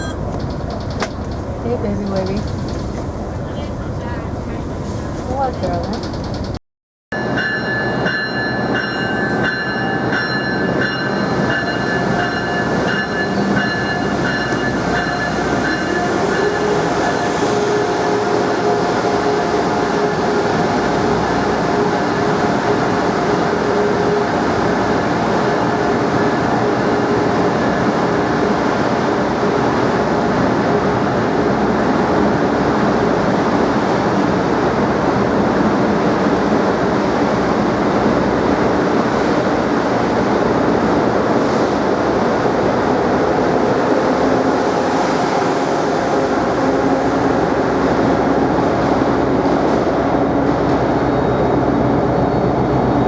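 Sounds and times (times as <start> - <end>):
train rumble and rail noise: 0.0 - 53.0.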